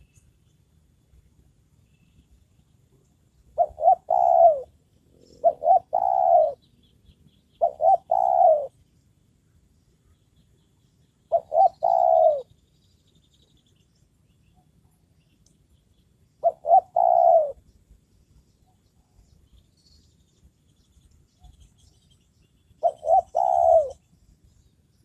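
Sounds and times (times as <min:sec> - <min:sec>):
dove cooing: 0:03.6 - 0:06.6, 0:07.6 - 0:08.8, 0:11.3 - 0:12.5, 0:16.4 - 0:17.6, 0:22.8 - 0:24.0.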